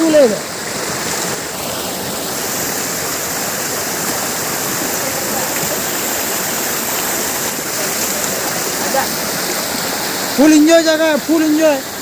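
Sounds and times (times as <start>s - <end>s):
stream and waterfall rushing: 0.0s - 12.0s.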